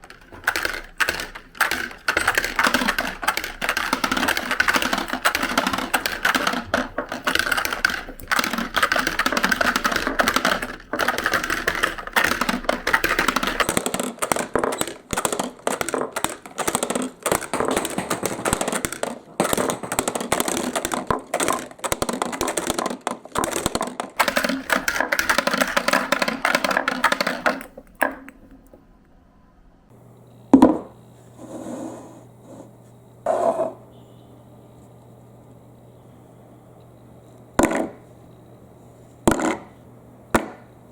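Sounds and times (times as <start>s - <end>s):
marbles rolling down plastic track: 0.0s - 28.2s
faint low steady hum: 27.7s - 40.9s.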